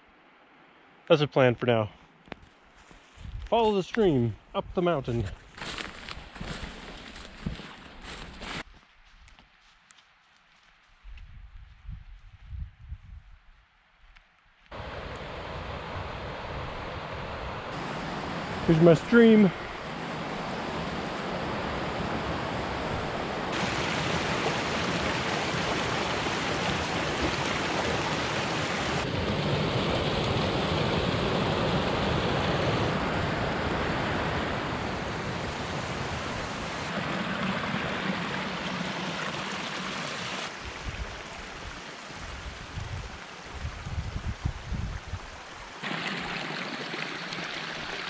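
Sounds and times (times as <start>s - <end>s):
stream water rushing: 14.8s - 48.0s.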